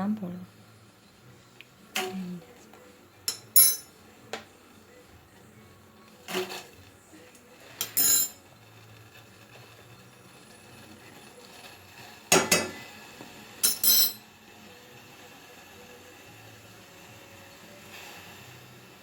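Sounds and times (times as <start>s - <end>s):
metal spoon clinking on cookware: 3.3s - 3.9s, 7.8s - 8.4s, 12.3s - 12.7s, 13.6s - 14.2s.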